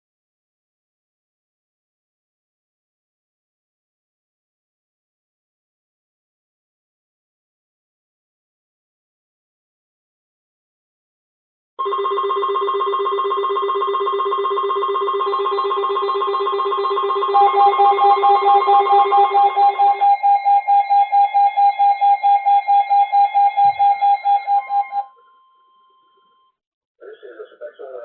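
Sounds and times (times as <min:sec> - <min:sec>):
high warning tone: 0:11.8 - 0:26.4
fast pulsing beeps: 0:13.8 - 0:25.1.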